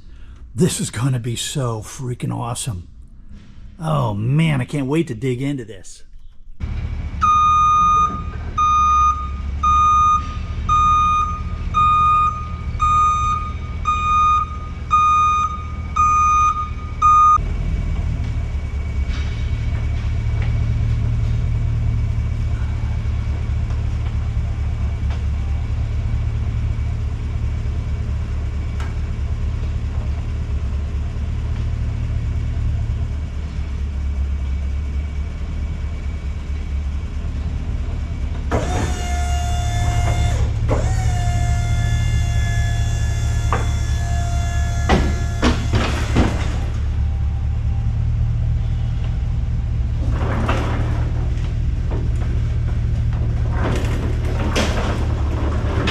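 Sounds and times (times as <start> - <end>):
engine running: 6.2 - 55.9
reversing alarm beeping: 7.2 - 17.4, 38.5 - 48.4.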